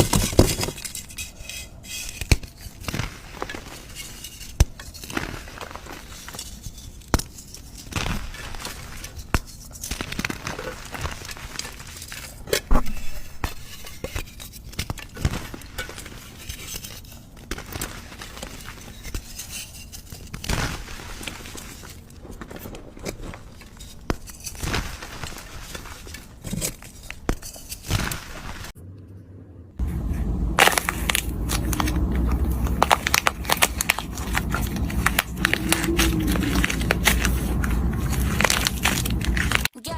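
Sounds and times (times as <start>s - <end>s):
slime squishing: 29.8s - 39.7s.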